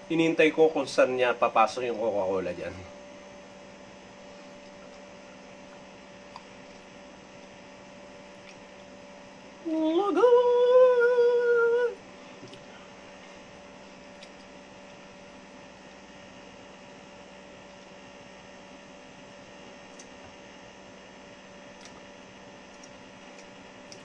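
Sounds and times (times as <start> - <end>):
electrical hum: 0.0 - 24.0
person humming: 9.6 - 12.0.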